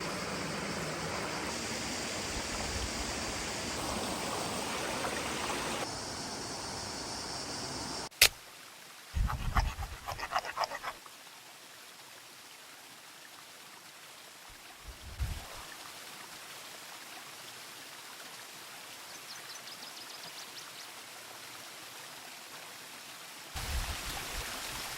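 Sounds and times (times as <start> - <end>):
river rushing: 0.0 - 5.9.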